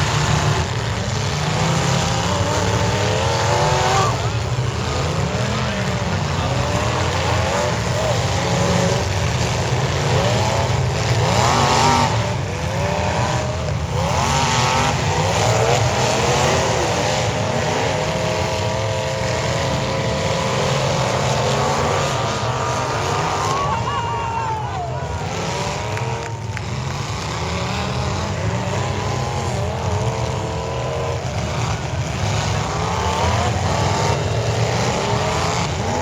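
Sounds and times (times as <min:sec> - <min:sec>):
car engines revving loudly: 0:00.0 - 0:36.0.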